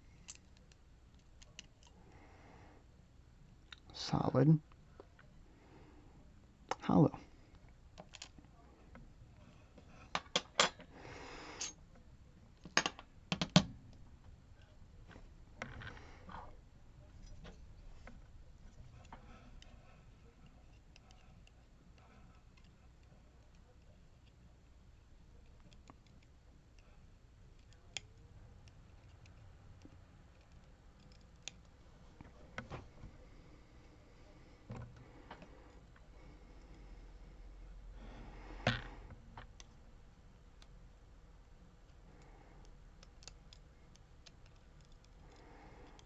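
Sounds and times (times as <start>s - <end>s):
small metal parts clicking: 8.0s - 8.4s, 27.6s - 31.7s, 43.0s - 46.0s.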